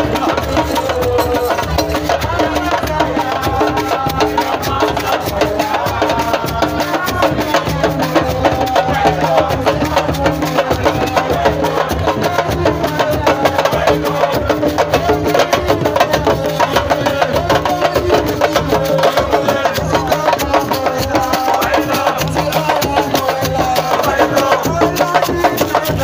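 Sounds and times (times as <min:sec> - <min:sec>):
fast dense drumming: 0:00.0 - 0:26.0
voices singing: 0:00.0 - 0:26.0.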